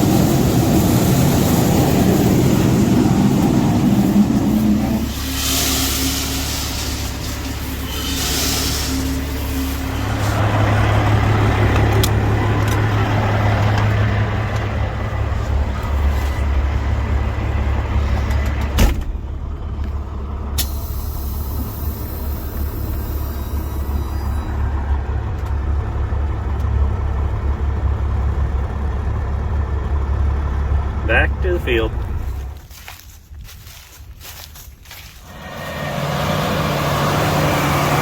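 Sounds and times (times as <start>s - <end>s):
air hissing: 0.0s - 10.4s, 20.6s - 24.3s
heavy diesel engine running: 0.0s - 38.0s.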